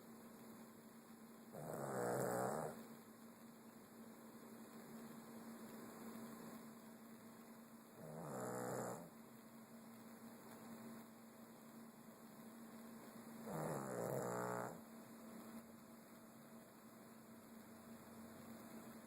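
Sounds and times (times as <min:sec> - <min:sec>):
steady hum: 0:00.0 - 0:19.0
pet snoring: 0:01.5 - 0:02.8, 0:08.0 - 0:09.1, 0:13.4 - 0:14.8.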